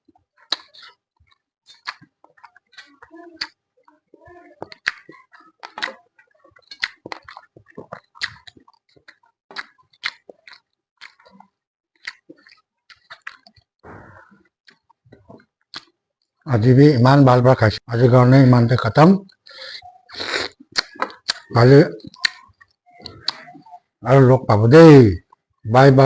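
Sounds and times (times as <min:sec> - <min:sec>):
chewing crunchy food: 0:00.0 - 0:13.7, 0:14.3 - 0:16.4
wet mouth clicks: 0:00.4 - 0:03.6, 0:04.6 - 0:06.0, 0:06.6 - 0:13.7, 0:14.4 - 0:16.0, 0:19.3 - 0:23.7.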